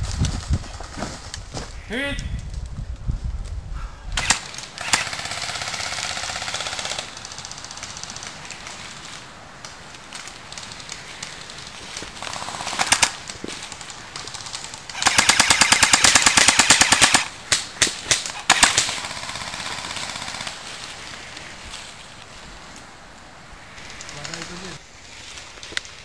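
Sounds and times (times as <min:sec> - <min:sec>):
airsoft guns firing: 0:04.2 - 0:08.4, 0:12.2 - 0:20.6.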